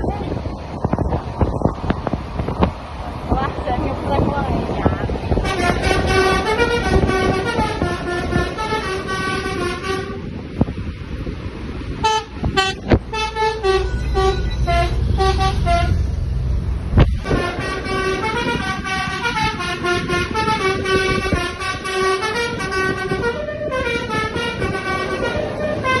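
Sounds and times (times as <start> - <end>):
low engine rumble: 0.0 - 26.0
multi-tone vehicle air horns: 5.3 - 10.4, 11.9 - 16.3, 17.2 - 26.0.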